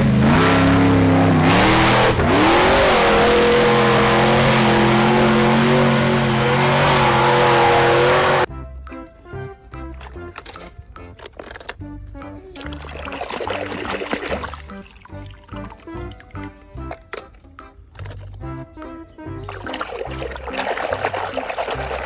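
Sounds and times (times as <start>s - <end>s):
vehicle engine revving: 0.0s - 8.5s.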